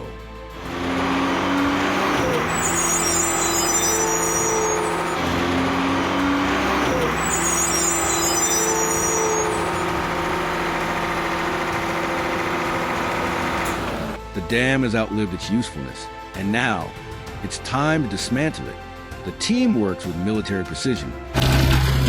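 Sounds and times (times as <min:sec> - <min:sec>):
heavy machine engine droning: 0:00.0 - 0:14.3.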